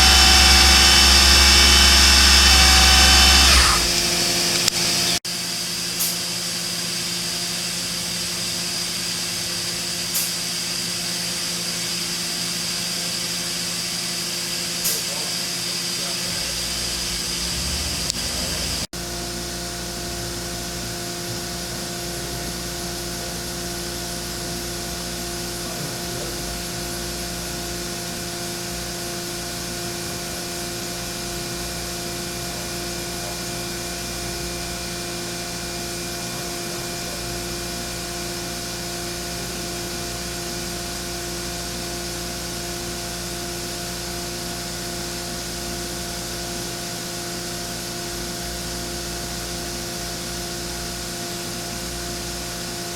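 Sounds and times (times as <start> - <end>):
machining center humming and whining: 0.0 - 52.9
hiss: 8.4 - 12.3.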